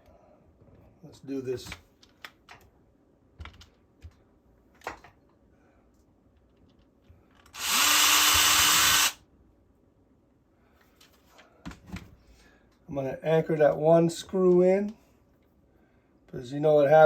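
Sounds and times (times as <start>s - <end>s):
power drill drilling: 7.5s - 9.2s.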